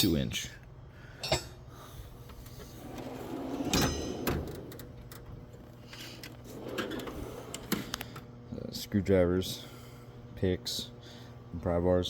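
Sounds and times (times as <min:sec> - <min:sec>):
drawers sliding on runners: 0:02.6 - 0:04.9, 0:06.4 - 0:07.9.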